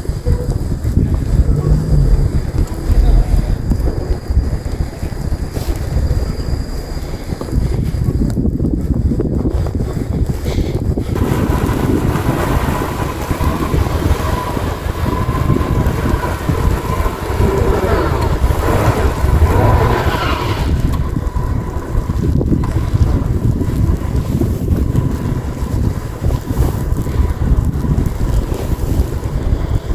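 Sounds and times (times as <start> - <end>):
thin steady whine: 0.0 - 9.8
wind buffeting microphone: 0.0 - 29.9.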